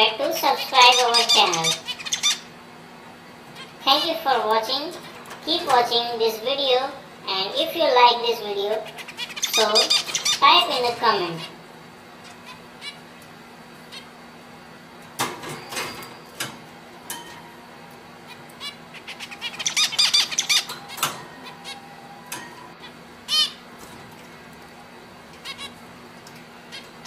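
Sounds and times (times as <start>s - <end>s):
finches chirping: 0.3s - 2.6s, 7.4s - 11.6s, 12.2s - 13.1s, 13.9s - 14.2s, 18.2s - 22.0s, 22.8s - 23.7s, 25.4s - 25.8s.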